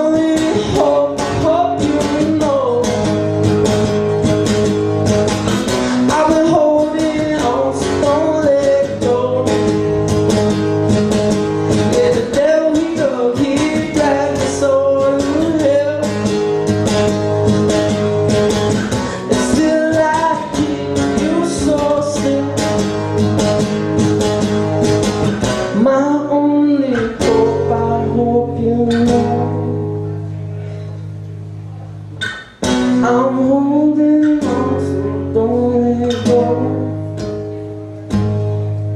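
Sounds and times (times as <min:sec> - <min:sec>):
person singing: 0:00.0 - 0:04.0, 0:05.5 - 0:10.3, 0:11.6 - 0:16.5, 0:18.7 - 0:23.3, 0:25.6 - 0:30.8, 0:32.9 - 0:37.6
strummed guitar: 0:00.0 - 0:38.9.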